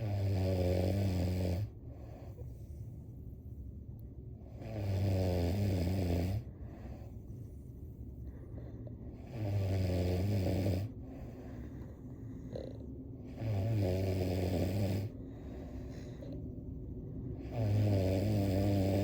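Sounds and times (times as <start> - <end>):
person snoring: 0.0 - 1.7, 4.5 - 6.5, 9.2 - 11.8, 12.4 - 16.4, 17.4 - 19.0
quiet breathing: 0.0 - 19.0.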